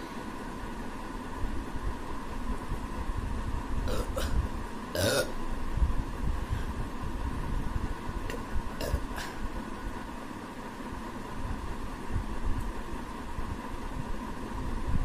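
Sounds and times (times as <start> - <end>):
woman burping: 3.9 - 4.4, 5.0 - 5.4.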